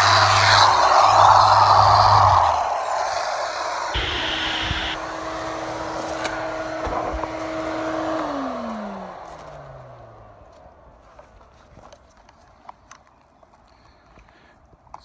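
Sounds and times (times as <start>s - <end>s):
power sander motor whining: 4.0s - 9.8s.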